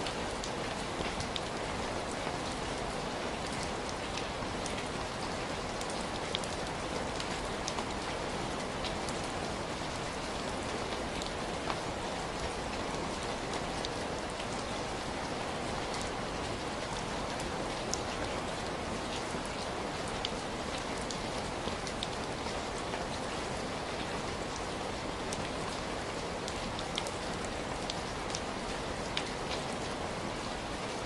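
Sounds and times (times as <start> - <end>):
heavy rain falling: 0.0 - 31.0.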